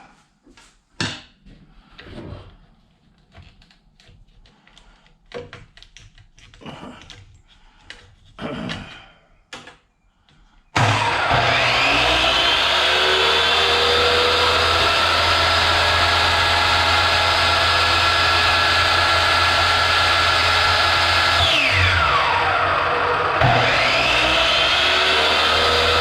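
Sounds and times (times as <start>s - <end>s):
chop saw motor whining: 10.8s - 26.0s.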